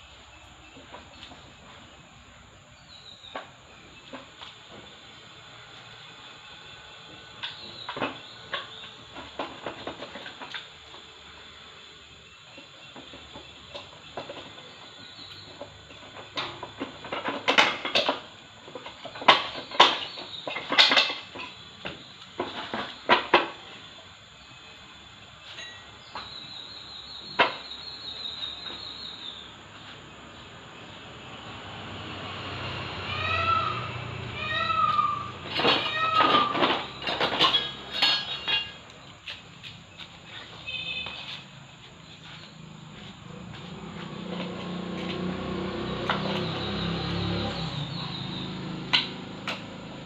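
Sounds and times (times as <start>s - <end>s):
metallic clicks and clanks of tools: 35.5s - 39.0s.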